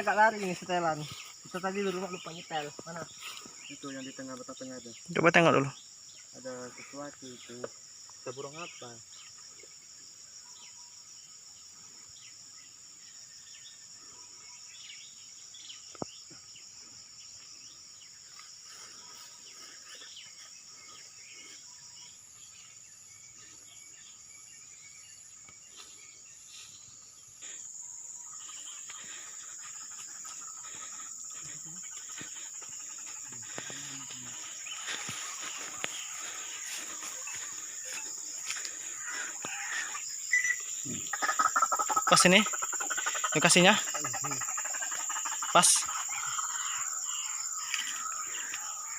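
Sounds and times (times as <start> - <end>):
crickets and cicadas chirping: 0.0 - 48.9.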